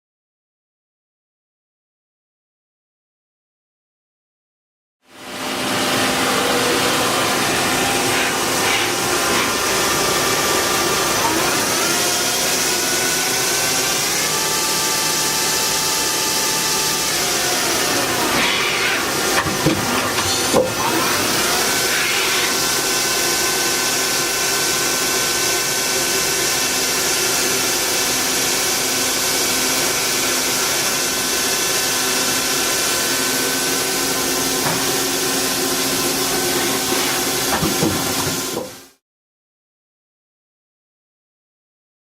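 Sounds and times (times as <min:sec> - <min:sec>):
lathe running with mechanical whine: 0:05.2 - 0:38.8.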